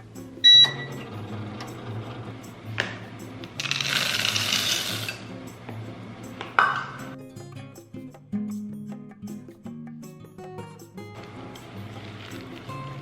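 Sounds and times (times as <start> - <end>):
background music: 0.0 - 13.0
electronic appliance beep: 0.4 - 1.2
hissy scraping noise: 1.8 - 6.4.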